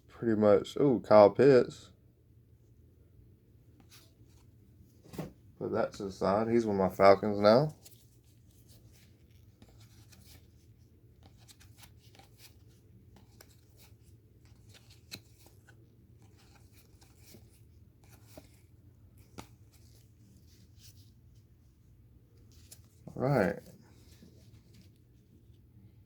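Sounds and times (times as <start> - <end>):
low room hum: 0.0 - 26.0
trading cards rustling and clicking: 6.0 - 21.2, 22.3 - 25.6.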